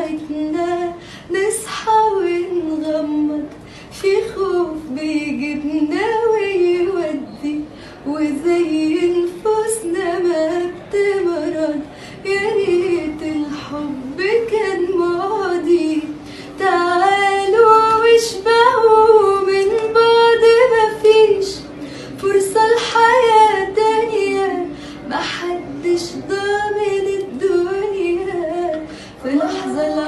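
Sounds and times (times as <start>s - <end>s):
woman singing unaccompanied: 0.0s - 30.0s
short breaths: 1.0s - 1.3s, 3.6s - 4.0s, 7.7s - 8.1s, 11.9s - 12.2s, 16.2s - 16.6s, 21.7s - 22.2s, 24.7s - 25.1s, 28.8s - 29.2s.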